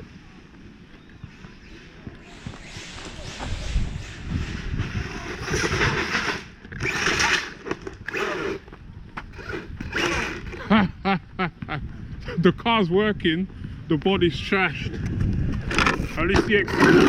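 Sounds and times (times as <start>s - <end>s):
rc car motor whirring: 2.2s - 8.6s, 9.3s - 10.7s.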